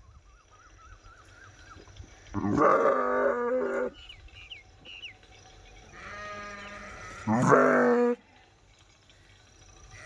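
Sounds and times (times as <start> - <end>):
sheep bleating: 6.0 - 8.2.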